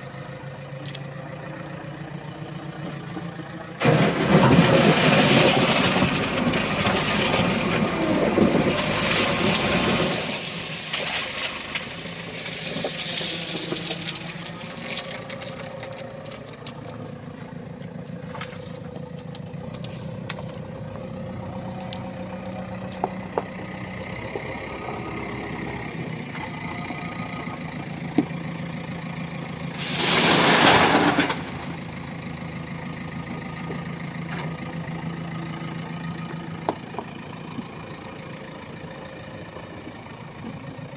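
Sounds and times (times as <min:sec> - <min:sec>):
diesel engine running: 0:00.0 - 0:40.9
loud rushing burst: 0:29.8 - 0:31.8.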